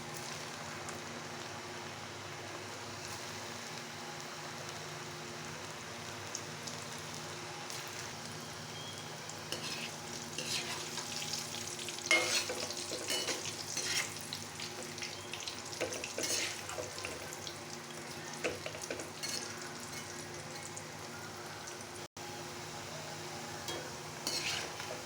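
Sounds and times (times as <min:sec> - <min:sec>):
food sizzling in a pan: 0:00.0 - 0:25.0
spatula scraping a pan: 0:09.5 - 0:11.1, 0:12.1 - 0:14.9, 0:15.8 - 0:17.0, 0:18.5 - 0:20.2, 0:24.2 - 0:25.0.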